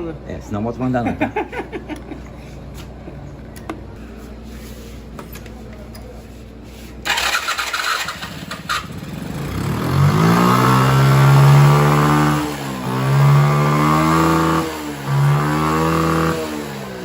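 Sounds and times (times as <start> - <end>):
moped engine revving: 6.9 - 17.0.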